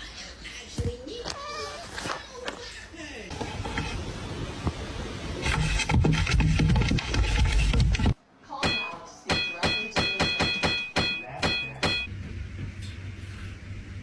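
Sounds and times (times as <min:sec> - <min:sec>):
sharp ringing strikes: 0:08.6 - 0:12.1.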